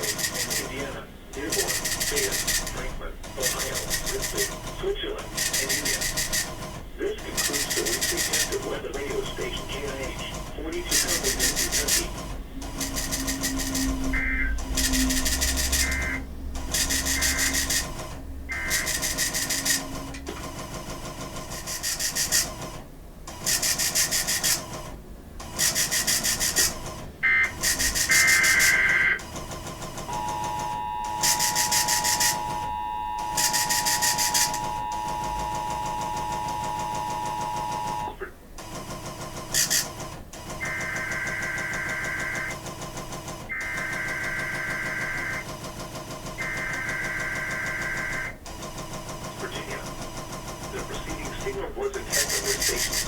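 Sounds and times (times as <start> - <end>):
radio static bursts: 0.0 - 20.0, 26.6 - 29.2, 49.3 - 50.0, 50.7 - 53.0
steady alert tone: 7.3 - 22.3, 26.1 - 29.2, 30.1 - 38.2
buzzy data-burst squawks: 18.5 - 19.8.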